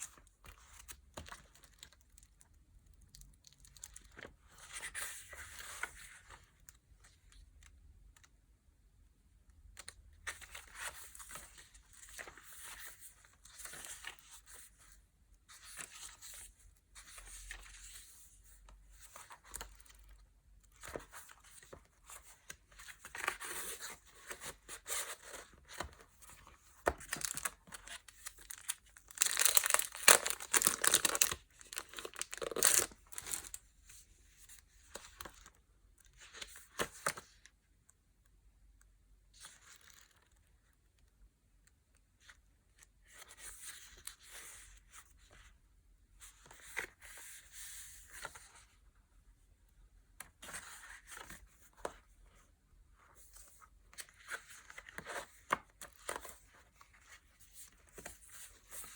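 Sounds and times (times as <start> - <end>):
packaging crinkling and tearing: 27.1 - 33.6.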